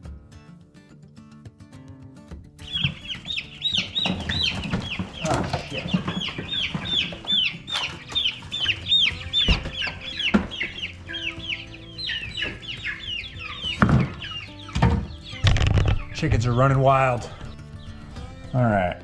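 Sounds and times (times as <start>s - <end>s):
chicks peeping: 2.6s - 19.0s
sharp knocks: 13.6s - 16.8s.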